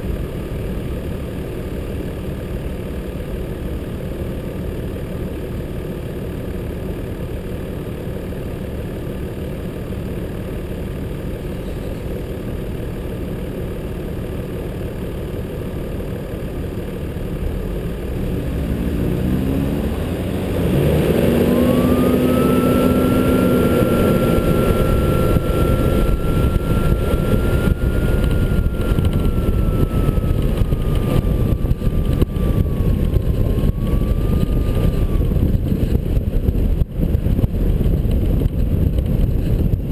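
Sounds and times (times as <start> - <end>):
high whine: 0.0 - 39.9
vehicle engine running: 0.0 - 39.9
wind buffeting: 21.1 - 39.9.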